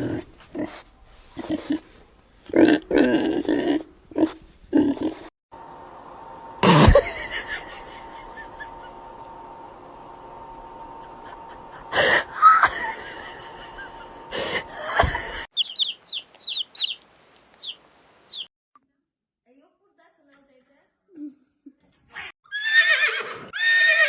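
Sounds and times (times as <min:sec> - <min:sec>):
low background hum: 0:05.6 - 0:18.5.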